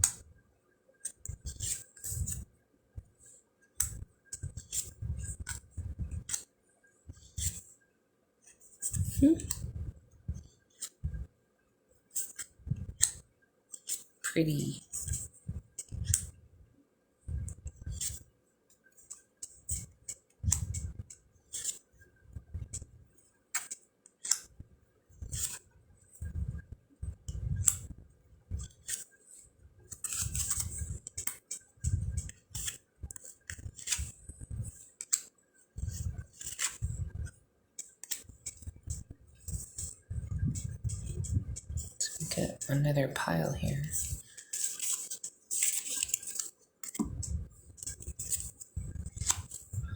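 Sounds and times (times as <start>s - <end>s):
cards flicking and sliding: 30.0s - 31.6s, 32.2s - 34.1s, 36.4s - 36.8s, 43.9s - 49.6s.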